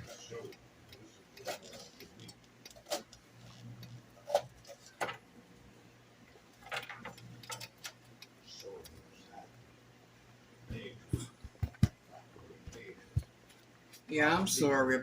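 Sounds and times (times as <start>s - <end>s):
faint low hum: 0.0s - 15.0s.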